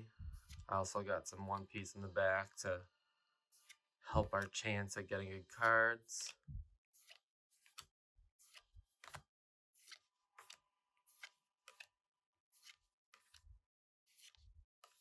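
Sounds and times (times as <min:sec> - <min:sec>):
trading cards flicking and rustling: 0:00.4 - 0:00.7, 0:03.5 - 0:04.6, 0:05.5 - 0:11.9, 0:12.5 - 0:15.0.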